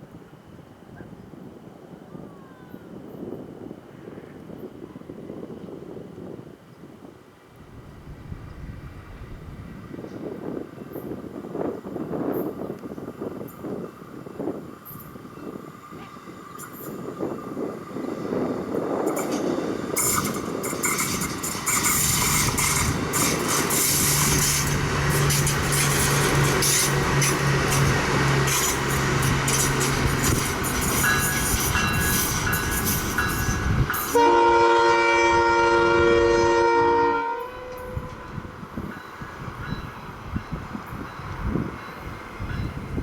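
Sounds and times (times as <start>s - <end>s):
train engine and wheels: 2.7s - 43.0s
train horn blast: 34.1s - 38.5s.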